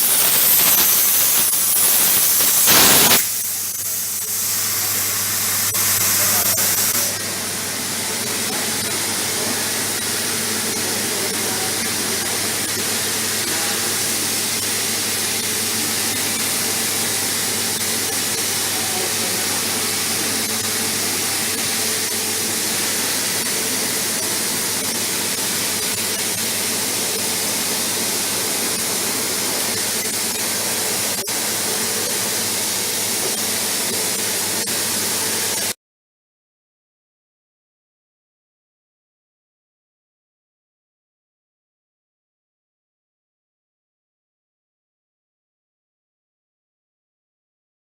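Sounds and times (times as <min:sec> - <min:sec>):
plasma torch hissing: 0:00.0 - 0:35.8.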